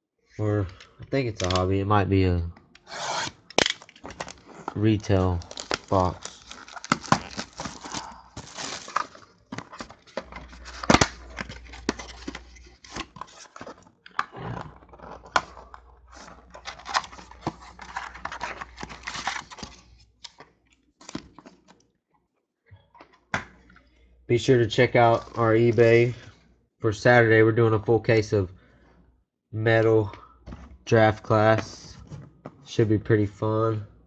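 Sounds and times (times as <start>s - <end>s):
plastic wrapping tearing and crinkling: 2.9s - 15.2s, 16.1s - 19.8s.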